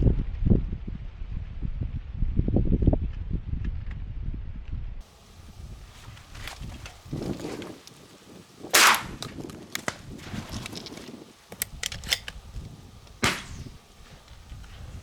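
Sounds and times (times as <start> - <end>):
shotgun shots: 8.7 - 9.2, 13.2 - 13.8
faint sharp cracks: 8.7 - 10.0, 13.1 - 13.7.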